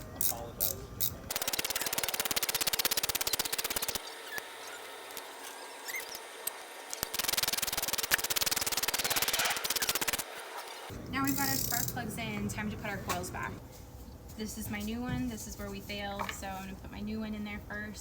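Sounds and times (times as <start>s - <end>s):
ratchet wrench clicking: 0.2s - 4.0s.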